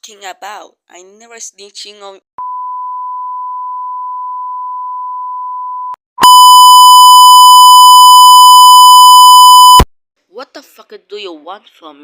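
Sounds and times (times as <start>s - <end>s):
clean censor beep: 2.4s - 9.8s
distorted buzzy beep: 6.2s - 9.8s.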